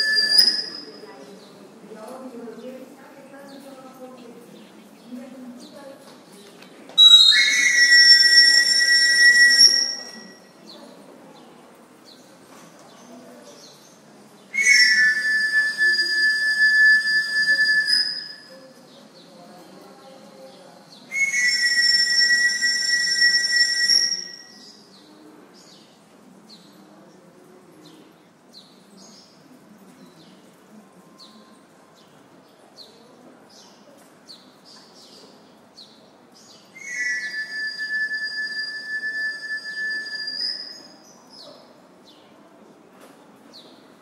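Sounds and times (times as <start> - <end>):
two-note whistle blasts: 0.0 - 1.0, 7.0 - 10.4, 14.6 - 18.6, 21.1 - 24.7, 36.8 - 41.0.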